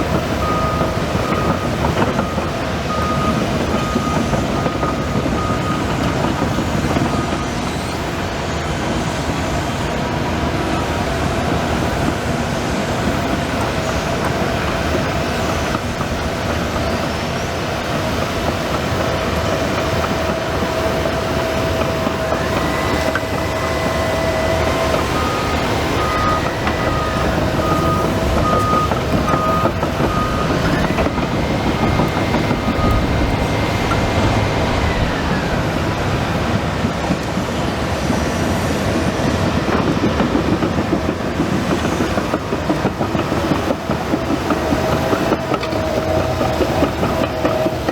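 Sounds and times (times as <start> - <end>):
bulldozer engine under load: 0.0 - 47.9
steel tracks clanking and squealing: 0.0 - 47.9
reverse alarm beeping: 0.3 - 7.7, 20.2 - 35.5.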